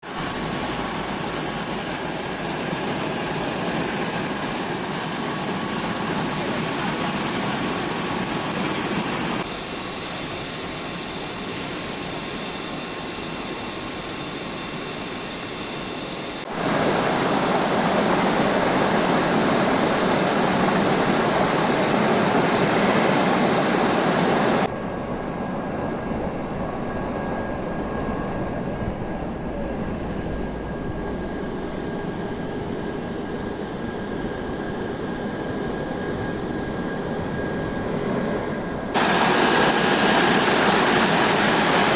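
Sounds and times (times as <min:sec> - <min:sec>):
washing machine rushing noise: 0:00.0 - 0:09.4, 0:16.4 - 0:24.7, 0:39.0 - 0:41.9.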